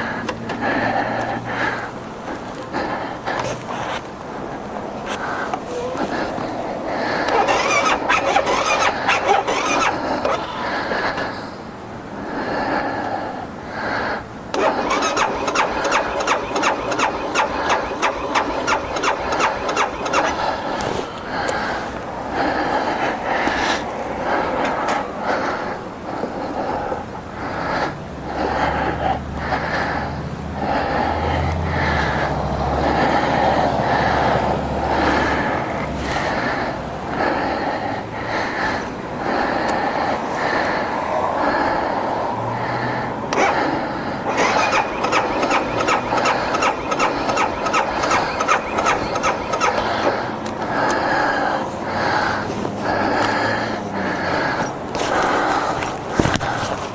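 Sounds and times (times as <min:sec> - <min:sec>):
motorcycle engine cranking: 0:07.2 - 0:10.5, 0:14.5 - 0:21.6, 0:43.3 - 0:43.6, 0:44.3 - 0:50.6.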